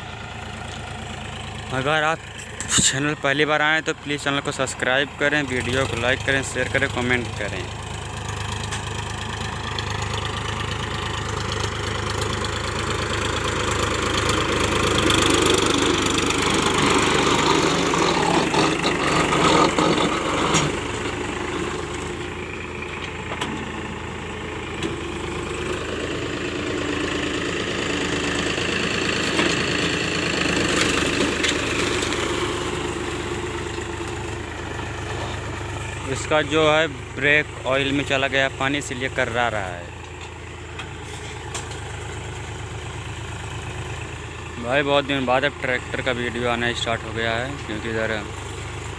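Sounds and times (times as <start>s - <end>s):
tractor running: 0.0s - 48.9s
brakes grating loudly: 1.7s - 3.8s, 12.4s - 24.2s, 24.8s - 48.9s.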